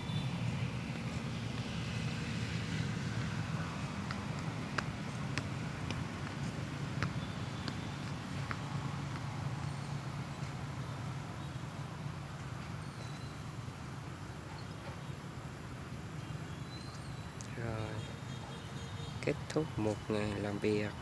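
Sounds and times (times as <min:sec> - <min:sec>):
heavy machine engine humming: 0:00.0 - 0:12.4.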